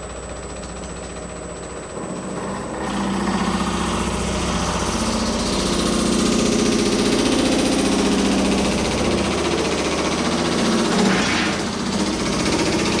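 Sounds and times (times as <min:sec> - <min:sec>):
power hammer pounding sheet metal: 0:08.7 - 0:13.0.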